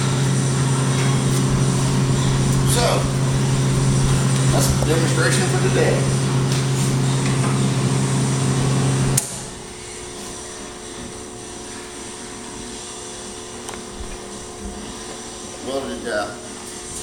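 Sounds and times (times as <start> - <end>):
welder transformer humming: 0.0 - 17.0.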